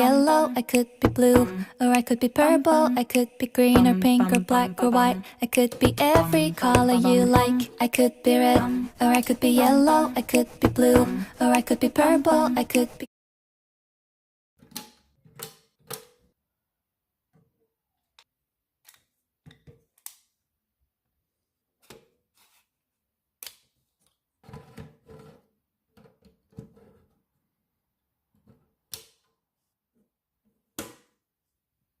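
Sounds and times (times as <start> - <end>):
plastic and metal clicks and snaps: 23.4 - 24.2, 28.9 - 29.3.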